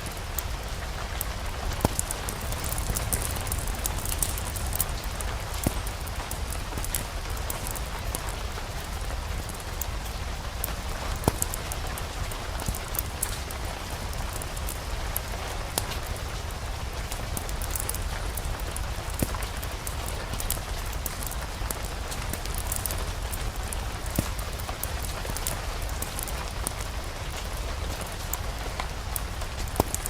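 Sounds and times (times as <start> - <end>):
sharp clicks and pops: 0.0 - 30.0
steady rain: 0.0 - 30.0.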